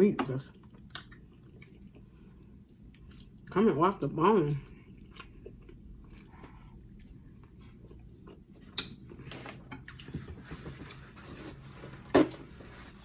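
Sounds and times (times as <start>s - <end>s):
chewing and handling food: 0.2s - 3.6s, 4.6s - 13.0s.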